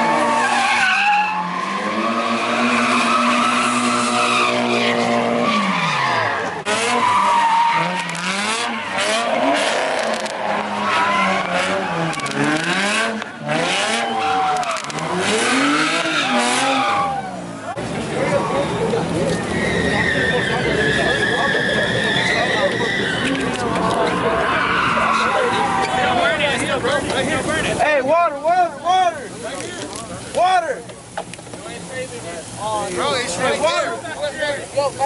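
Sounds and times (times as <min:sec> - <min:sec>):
tyres screeching: 0:00.0 - 0:26.8
car engine revving: 0:00.0 - 0:27.8.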